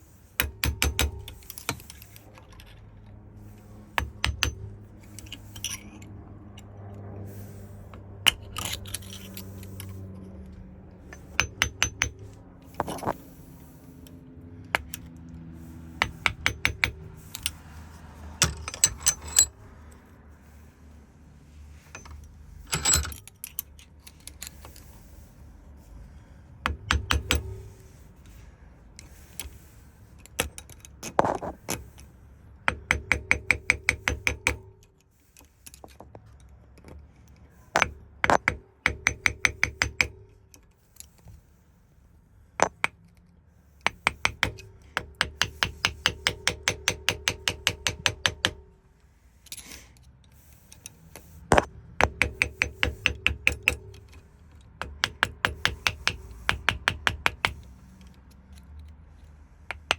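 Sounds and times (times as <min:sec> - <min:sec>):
metal tools knocking and clicking: 0:00.4 - 0:02.7, 0:04.0 - 0:06.1, 0:11.1 - 0:13.2, 0:18.4 - 0:19.6, 0:21.9 - 0:24.7, 0:26.7 - 0:27.7, 0:37.8 - 0:40.3, 0:43.9 - 0:48.7, 0:51.5 - 0:57.7.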